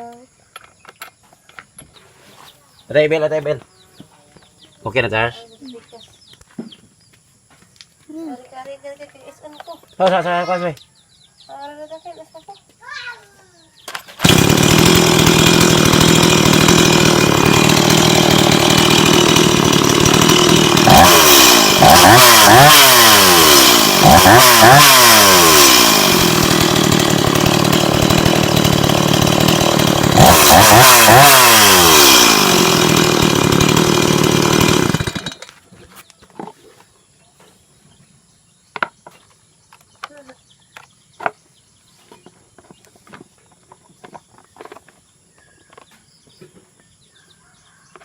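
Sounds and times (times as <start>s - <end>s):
chainsaw engine revving: 13.9s - 35.5s.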